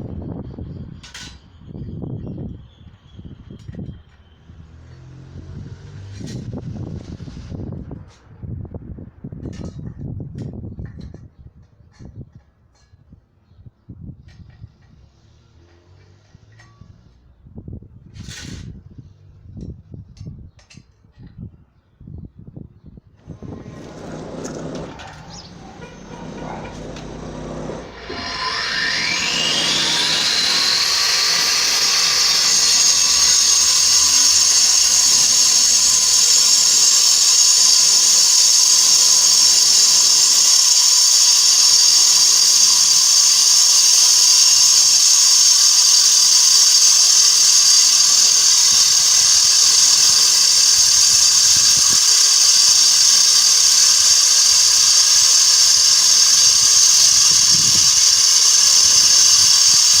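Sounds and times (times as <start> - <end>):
angle grinder high whine: 23.2 - 60.0.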